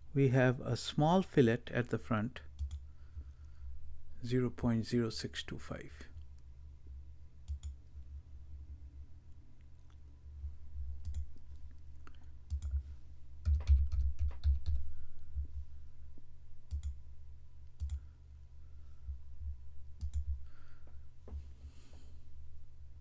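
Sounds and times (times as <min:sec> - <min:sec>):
steady low hum: 0:00.0 - 0:23.0
mouse clicks and keystrokes: 0:02.6 - 0:02.8, 0:07.4 - 0:07.8, 0:11.0 - 0:11.7, 0:12.5 - 0:12.8, 0:16.7 - 0:17.0, 0:17.7 - 0:18.0, 0:20.0 - 0:20.4.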